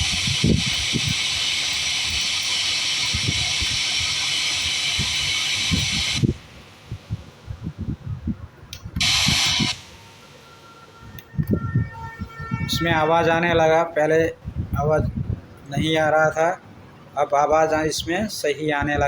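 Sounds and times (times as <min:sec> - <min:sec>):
radio static from speakers: 0:00.0 - 0:06.5, 0:09.0 - 0:10.0.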